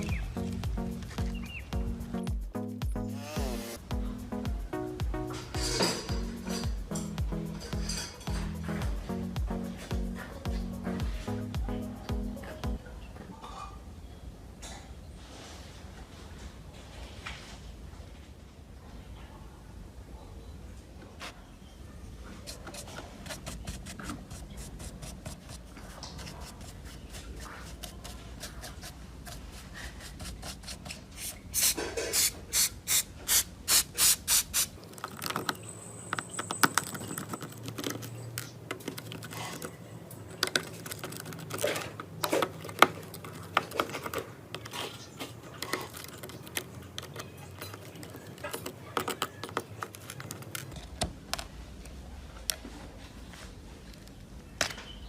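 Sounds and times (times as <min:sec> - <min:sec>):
hand tools clicking and scraping: 0:00.0 - 0:12.8, 0:22.4 - 0:51.0
loud rubbing strokes: 0:03.1 - 0:03.9.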